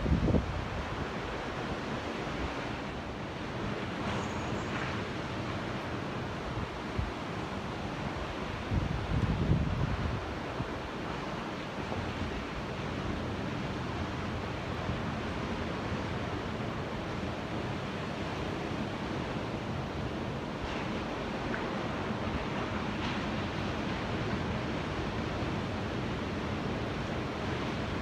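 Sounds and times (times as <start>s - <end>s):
ocean waves breaking: 9.9s - 28.0s.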